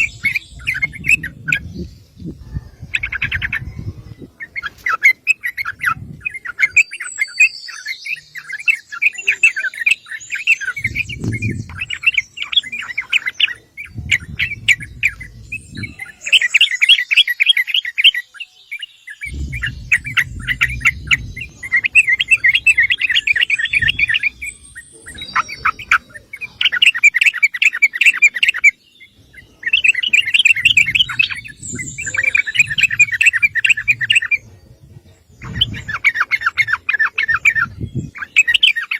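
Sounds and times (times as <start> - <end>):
bird bubbling chattering calls: 0.0 - 38.9
low rumble: 10.8 - 12.2, 13.9 - 16.2, 19.2 - 26.2.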